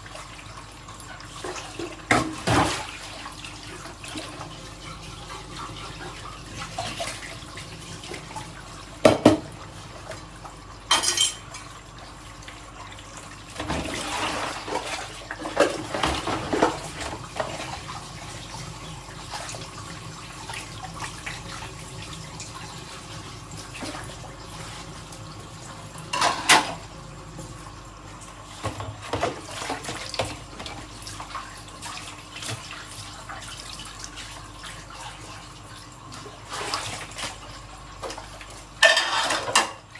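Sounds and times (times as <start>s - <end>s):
tap water running: 0.0s - 39.9s
dishes clinking and clattering: 10.9s - 11.6s, 26.1s - 26.8s, 38.8s - 39.9s.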